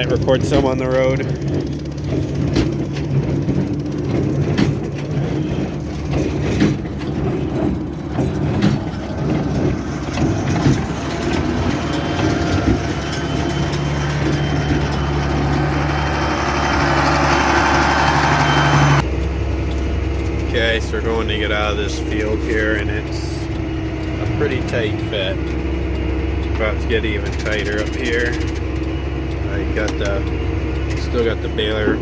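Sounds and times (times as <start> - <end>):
sharp metal clanks and knocks: 0.0 - 17.2
baler machinery: 0.0 - 32.0
tractor engine running: 0.0 - 32.0.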